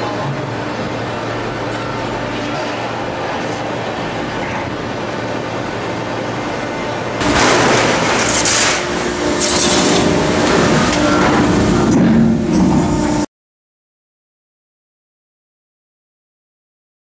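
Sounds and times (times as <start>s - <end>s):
baler power unit humming: 0.0s - 13.3s
hydraulic hissing and rushing: 7.2s - 13.1s.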